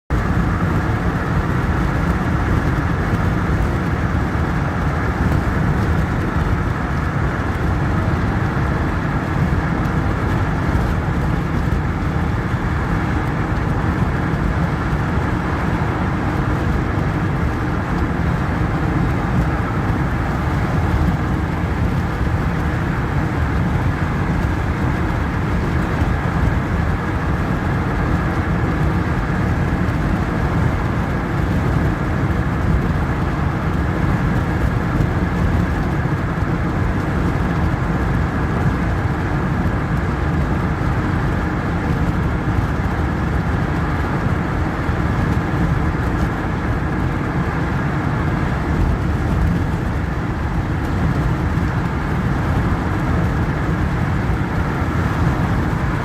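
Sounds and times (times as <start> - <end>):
car driving rumble: 0.1 - 35.9, 47.7 - 56.0.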